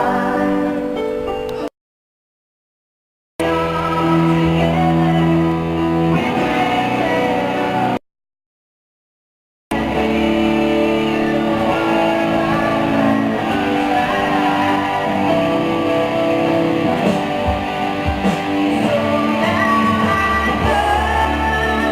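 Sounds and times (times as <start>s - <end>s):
live band with electric guitar: 3.4s - 8.0s, 9.7s - 21.9s.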